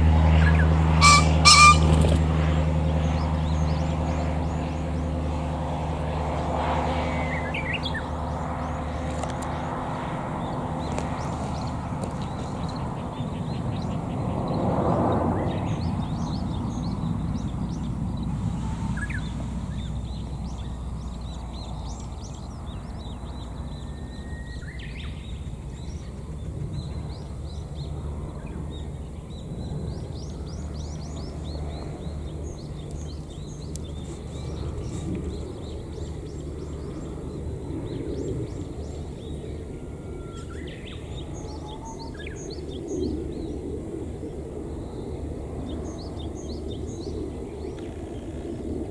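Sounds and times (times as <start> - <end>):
low outdoor rumble: 0.0 - 48.9
sharp bird calls: 0.4 - 4.3
small birds chirping: 0.4 - 5.1, 15.4 - 39.6.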